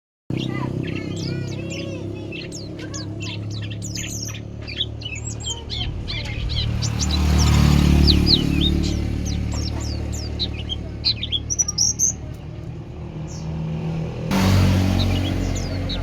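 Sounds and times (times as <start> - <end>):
bird song with high chirps: 0.3 - 13.6, 14.3 - 16.0.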